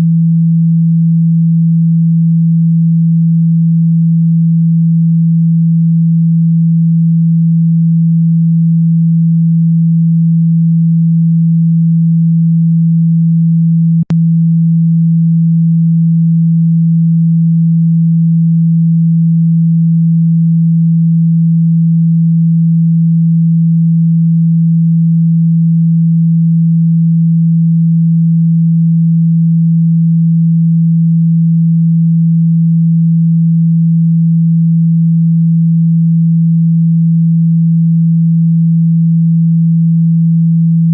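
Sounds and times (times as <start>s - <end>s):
low steady pure tone: 0.0s - 40.9s
click: 14.0s - 14.2s.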